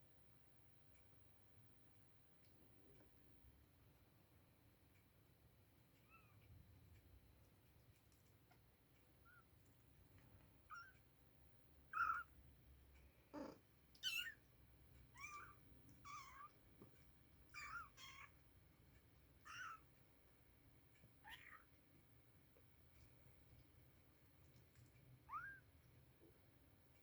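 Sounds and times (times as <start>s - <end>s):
kittens mewing: 11.9s - 12.3s, 13.3s - 14.4s, 19.4s - 19.9s.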